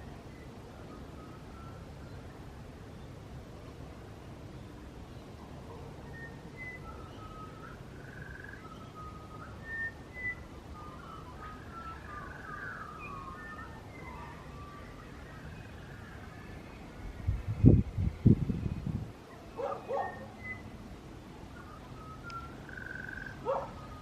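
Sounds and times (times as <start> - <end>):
low steady background rumble: 0.0 - 24.0
birds singing: 4.5 - 24.0.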